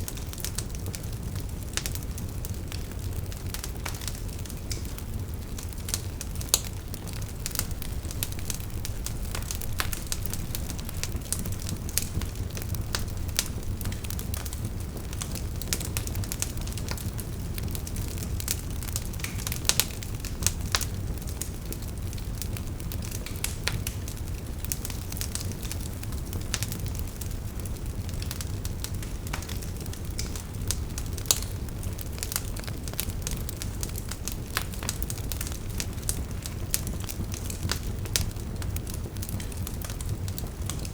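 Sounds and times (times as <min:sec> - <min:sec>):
bonfire crackling and popping: 0:00.0 - 0:40.9
low steady rumble: 0:06.7 - 0:16.3.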